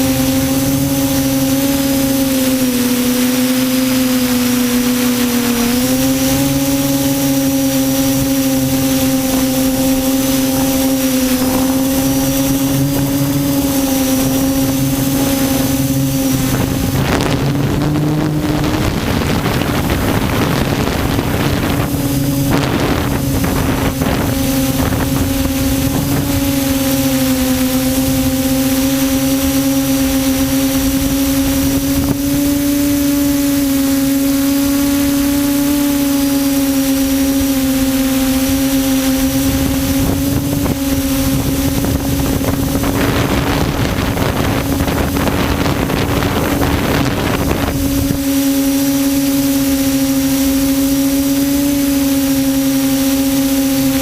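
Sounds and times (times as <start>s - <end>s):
rushing noise: 0.0s - 37.5s
quadcopter propellers humming: 0.0s - 54.0s.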